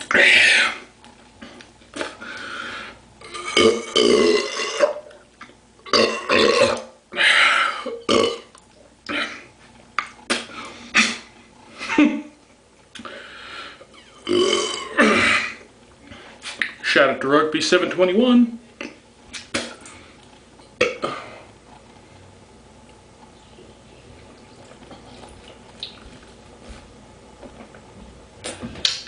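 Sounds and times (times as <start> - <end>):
man belching: 3.2 - 5.1, 5.8 - 6.9, 7.8 - 8.5, 14.2 - 15.6, 20.8 - 21.3.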